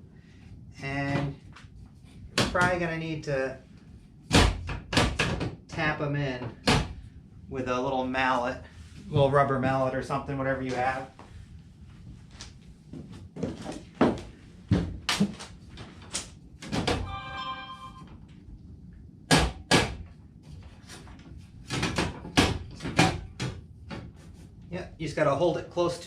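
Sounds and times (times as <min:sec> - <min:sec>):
short ringing tone: 0:17.0 - 0:18.2.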